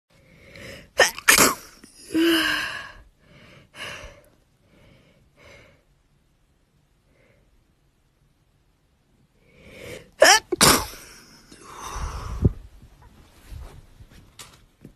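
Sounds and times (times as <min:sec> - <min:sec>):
soft breaths: 0:00.1 - 0:01.0, 0:02.0 - 0:07.9, 0:09.2 - 0:10.2, 0:11.1 - 0:14.2
woman sneezing: 0:01.0 - 0:01.8, 0:10.2 - 0:11.3.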